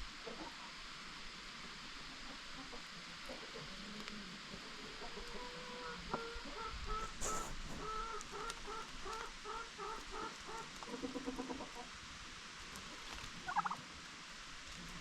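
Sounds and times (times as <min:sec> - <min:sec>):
chickens clucking: 0:02.1 - 0:12.0, 0:13.2 - 0:13.8.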